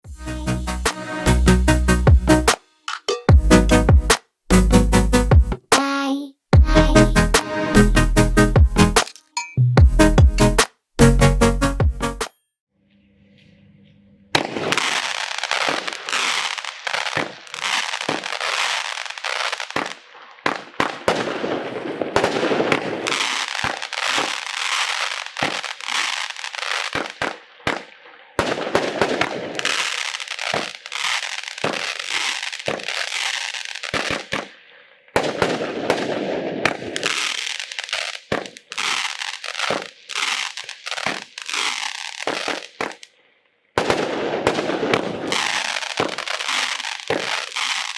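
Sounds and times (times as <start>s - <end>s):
fireworks firing rapid shots: 2.2s - 4.2s, 8.8s - 9.2s, 14.4s - 43.1s, 43.8s - 47.9s.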